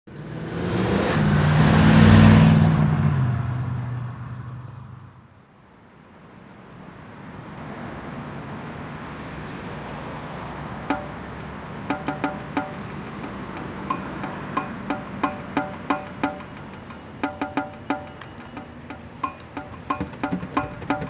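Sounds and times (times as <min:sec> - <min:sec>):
car passing by: 0:00.1 - 0:05.2, 0:06.8 - 0:10.9
low traffic hum: 0:07.9 - 0:21.0.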